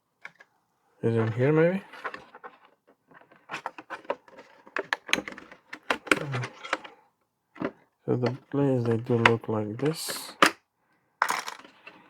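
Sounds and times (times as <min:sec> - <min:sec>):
plastic parts clicking: 0:01.2 - 0:07.0, 0:07.6 - 0:10.6, 0:11.2 - 0:12.0
packaging rustling: 0:01.9 - 0:06.8.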